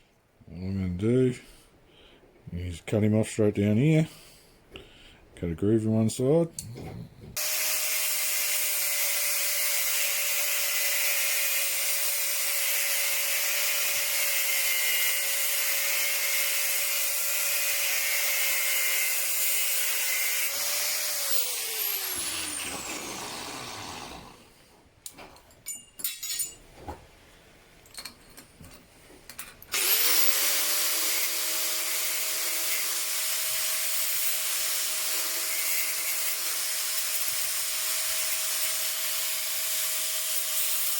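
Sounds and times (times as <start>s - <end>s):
power tool cutting metal: 7.4s - 24.4s, 29.7s - 40.9s.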